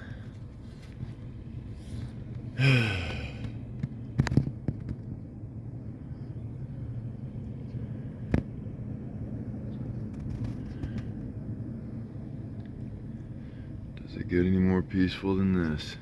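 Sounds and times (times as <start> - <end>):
steady low rumble: 0.0 - 16.0
man groaning sigh: 2.6 - 3.5.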